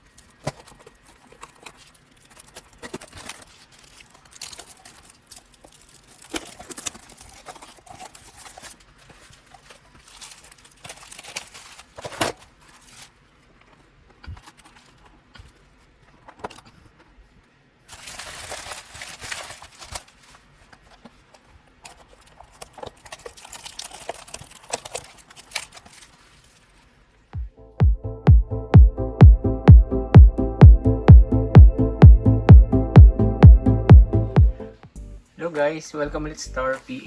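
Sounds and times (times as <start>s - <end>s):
rustling and crinkling: 0.0s - 27.4s.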